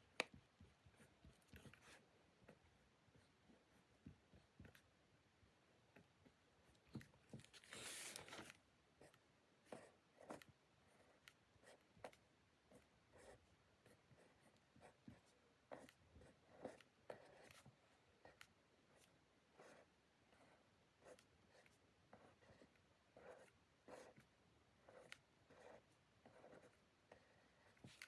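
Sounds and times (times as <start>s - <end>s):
pen scratching on paper: 0.6s - 2.0s, 7.3s - 28.0s.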